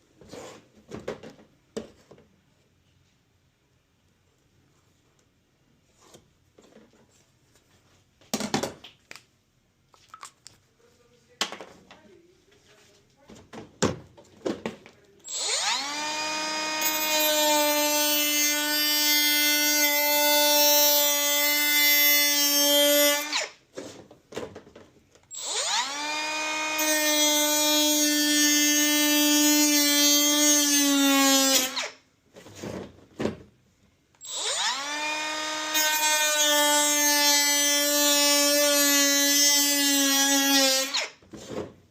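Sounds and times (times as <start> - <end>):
power drill whining: 15.2 - 23.6, 25.3 - 32.0, 34.2 - 41.2.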